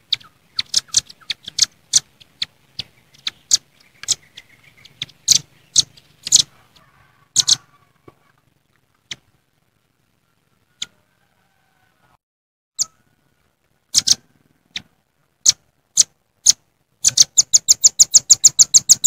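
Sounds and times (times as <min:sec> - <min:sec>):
bird chip calls: 0:00.0 - 0:08.0, 0:13.9 - 0:19.0.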